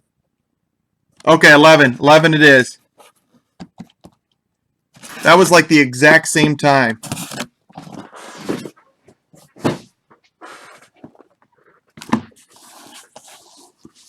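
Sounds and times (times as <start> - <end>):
cardboard boxes rustling and tapping: 7.0 - 9.9.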